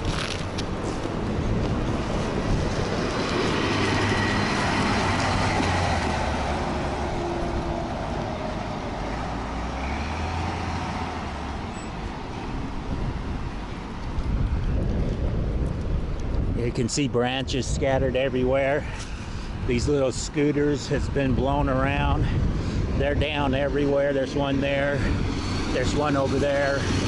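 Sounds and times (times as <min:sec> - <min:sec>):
large road vehicle rumbling past: 0:00.0 - 0:16.1, 0:22.2 - 0:27.0.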